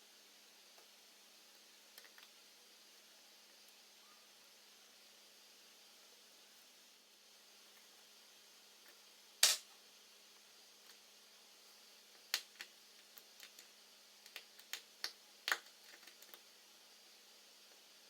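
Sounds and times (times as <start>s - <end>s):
small tools and parts clicking: 9.4s - 9.7s.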